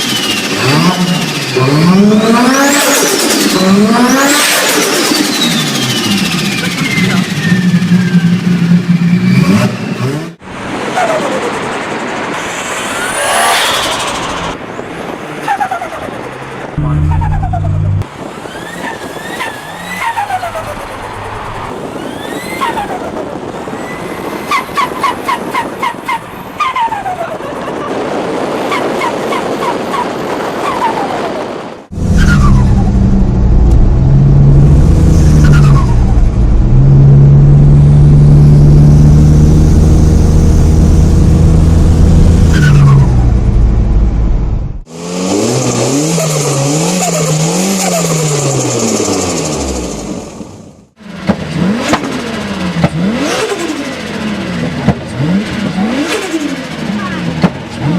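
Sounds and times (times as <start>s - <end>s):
car engine revving: 0.0s - 25.6s, 31.9s - 57.9s.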